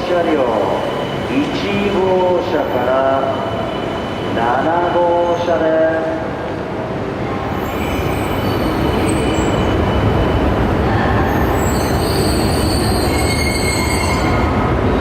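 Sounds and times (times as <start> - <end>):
train rumbling: 0.0 - 15.0
high-pitched wheel squeal: 11.3 - 14.6.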